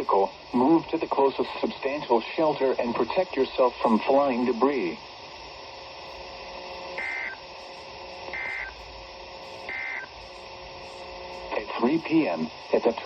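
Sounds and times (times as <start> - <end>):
radio hiss: 0.0 - 13.0
two-tone data burst warble: 6.0 - 13.0.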